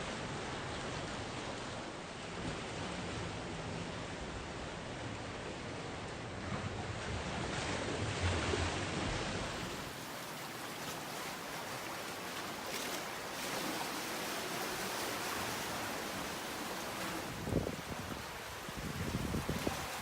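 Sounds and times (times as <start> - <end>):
ocean surf washing: 0.0 - 20.0
wind rumble on microphone: 17.0 - 20.0.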